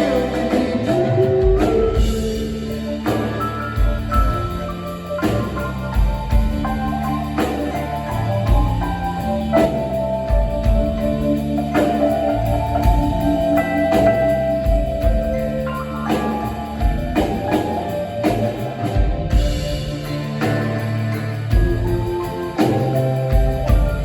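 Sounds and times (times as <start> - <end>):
drums: 0.0 - 24.0
held lead notes: 0.0 - 24.0
live rock band playing: 0.0 - 24.0.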